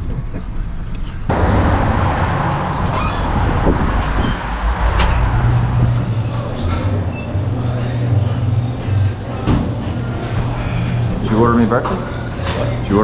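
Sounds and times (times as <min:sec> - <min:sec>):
vehicle engine and road noise: 0:00.6 - 0:13.0
rushing haze: 0:01.3 - 0:09.1.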